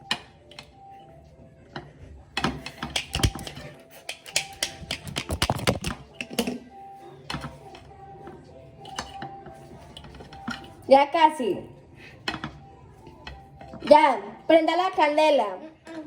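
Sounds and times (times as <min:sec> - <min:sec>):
background music: 0:00.0 - 0:16.0
kitchen utensils and dishes clicking: 0:01.8 - 0:06.6, 0:08.8 - 0:09.3.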